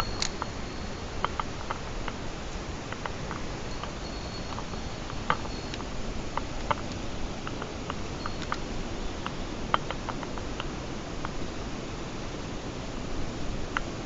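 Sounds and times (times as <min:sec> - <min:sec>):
light ticks and clicks: 0:00.0 - 0:08.6
mountain stream rushing: 0:00.0 - 0:14.0.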